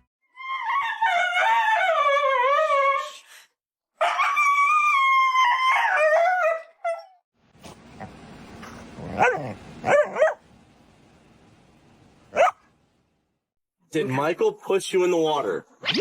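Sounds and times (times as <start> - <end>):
dog howling: 0.4 - 3.1, 4.0 - 7.2.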